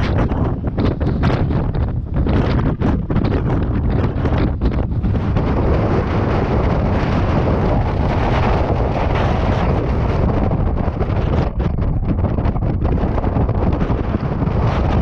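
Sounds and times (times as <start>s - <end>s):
blizzard wind buffeting microphone: 0.0s - 15.0s.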